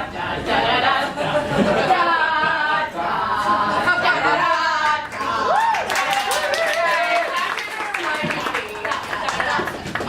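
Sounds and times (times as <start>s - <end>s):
group singing a cappella: 0.0s - 5.5s.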